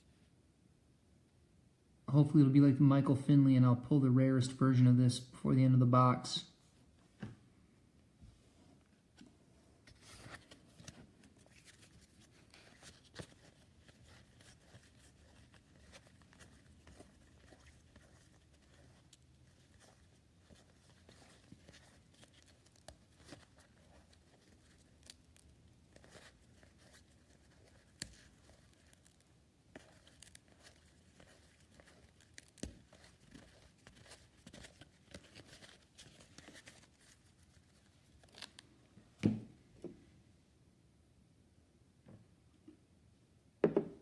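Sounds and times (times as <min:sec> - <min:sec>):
foil wrapper tearing and crinkling: 0:20.8 - 0:37.3.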